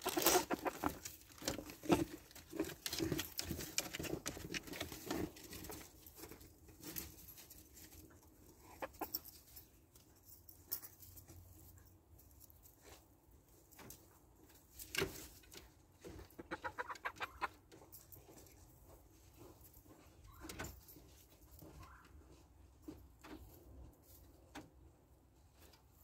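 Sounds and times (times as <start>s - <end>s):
chickens clucking: 0.0s - 2.2s, 8.6s - 9.2s, 16.0s - 17.7s
chickens pecking taps: 0.0s - 5.1s, 15.6s - 17.8s.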